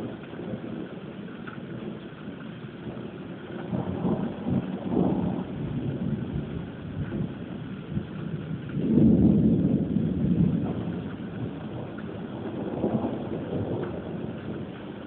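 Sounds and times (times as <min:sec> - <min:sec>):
rain falling: 0:00.0 - 0:15.0
thunder rumbling: 0:00.0 - 0:15.0.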